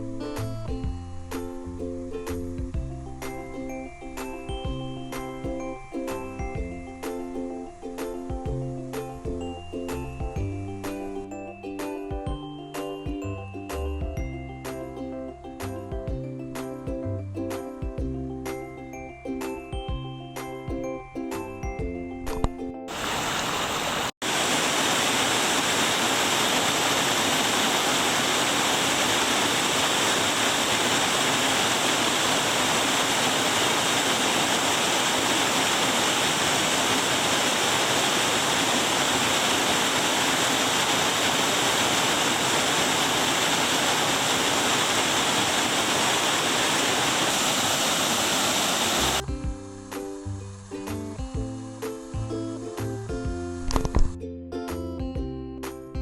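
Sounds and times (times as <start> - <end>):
music: 0.0 - 22.9, 49.1 - 56.0
waterfall rushing: 22.9 - 49.2.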